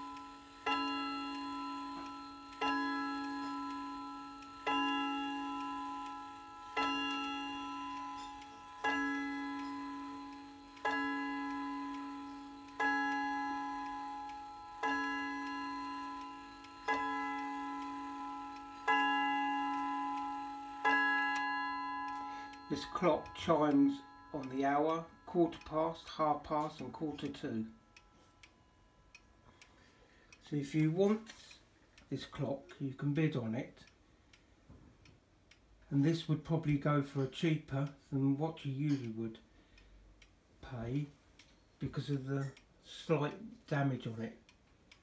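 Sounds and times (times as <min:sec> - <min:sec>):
wall clock striking: 0:00.0 - 0:31.3.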